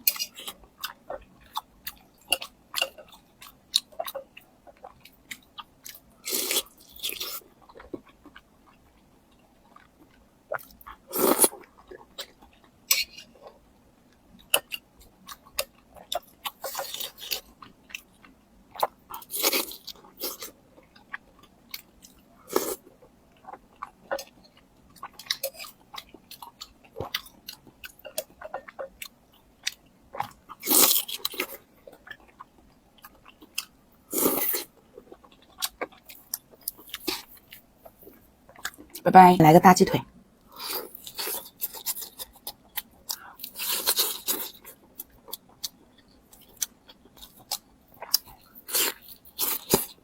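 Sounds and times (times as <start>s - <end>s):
chewing and biting food: 14.4s - 39.0s, 40.5s - 50.0s.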